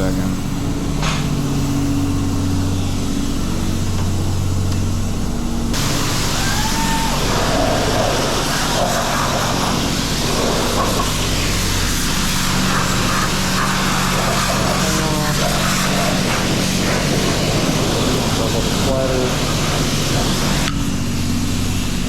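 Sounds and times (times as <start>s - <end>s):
pressure washer motor hum: 0.0s - 22.0s
water spray hissing: 5.8s - 22.0s.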